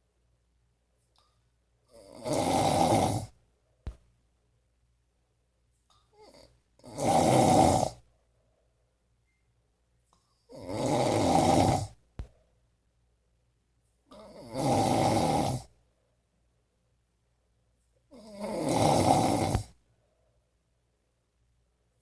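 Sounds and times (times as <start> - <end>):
person snoring heavily: 1.9 - 3.4, 6.2 - 8.0, 10.5 - 12.0, 14.1 - 15.7, 18.1 - 19.8.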